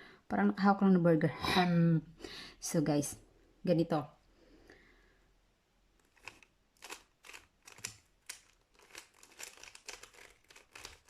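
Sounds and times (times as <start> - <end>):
puzzle cube clicking: 6.0 - 11.0.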